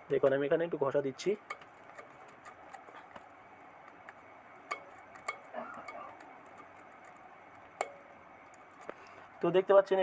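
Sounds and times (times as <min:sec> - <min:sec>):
faint metal scratching: 0:01.2 - 0:03.5, 0:04.1 - 0:09.6.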